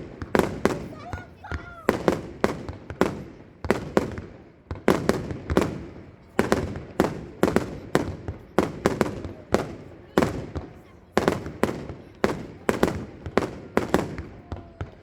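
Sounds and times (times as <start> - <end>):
fireworks bangs: 0.0 - 15.0.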